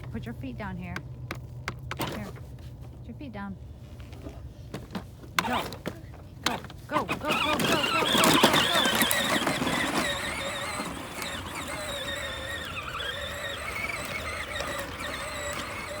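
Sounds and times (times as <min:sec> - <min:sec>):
toy tractor electric motor whining: 0:05.4 - 0:16.0.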